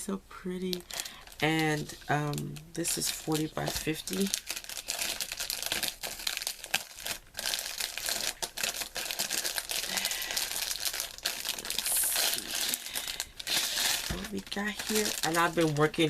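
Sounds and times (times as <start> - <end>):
packaging crinkling and rustling: 0.6 - 16.0.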